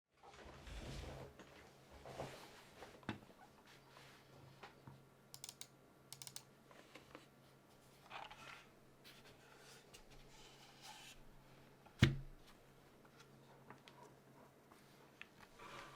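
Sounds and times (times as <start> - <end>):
faint mechanical keyboard clacks: 5.4 - 7.2.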